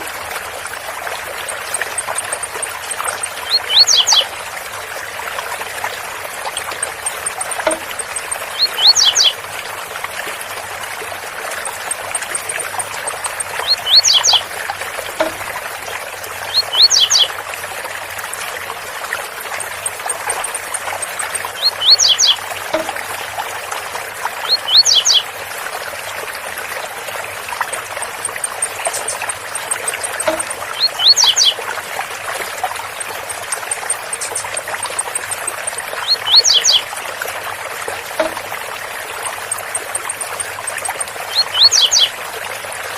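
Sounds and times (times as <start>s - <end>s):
small bird singing: 1.5s - 4.4s, 6.6s - 9.4s, 11.6s - 14.5s, 16.5s - 17.4s, 19.6s - 22.9s, 24.4s - 25.3s, 27.6s - 31.6s, 32.8s - 37.0s, 39.4s - 42.2s.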